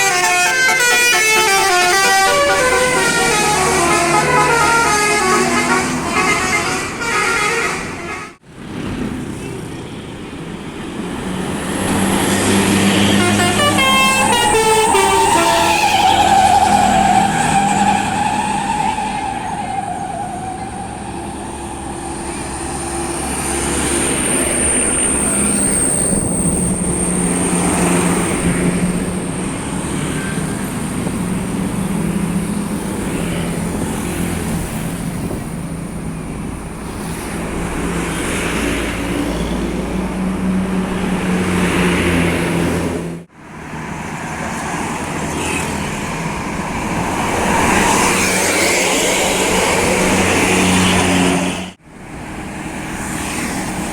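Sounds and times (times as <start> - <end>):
musical bus horn: 0.0 - 8.4, 12.8 - 20.8
road traffic passing: 0.0 - 53.9.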